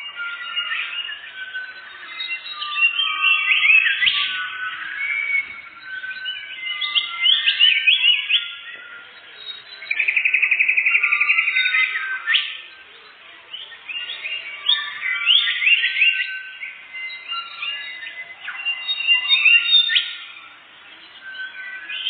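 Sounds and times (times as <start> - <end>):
songbird singing: 0.0 - 22.0.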